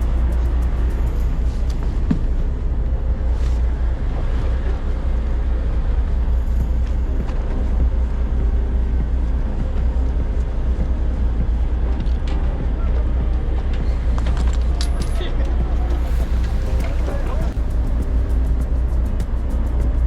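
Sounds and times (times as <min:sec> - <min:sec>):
boat engine rumbling: 0:00.0 - 0:20.0.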